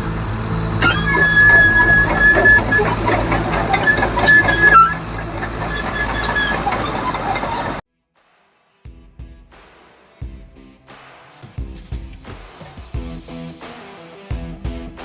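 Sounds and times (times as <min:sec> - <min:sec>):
bulldozer tracks clanking: 0:00.0 - 0:07.8
diesel engine running: 0:00.0 - 0:07.8
high squeal: 0:00.0 - 0:07.8.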